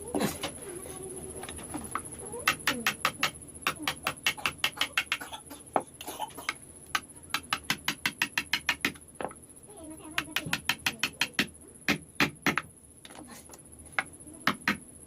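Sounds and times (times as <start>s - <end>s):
mallet tapping chisel: 7.0s - 9.0s, 10.2s - 12.7s.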